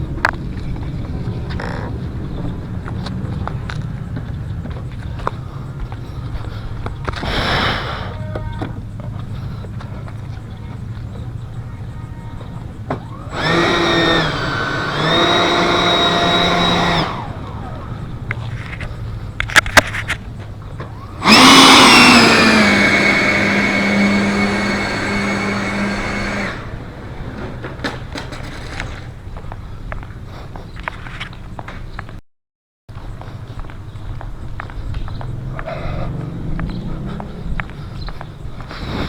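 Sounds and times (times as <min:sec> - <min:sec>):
model jet motor whining: 0:07.2 - 0:09.3, 0:11.2 - 0:29.0
sharp clicks: 0:13.0 - 0:20.3.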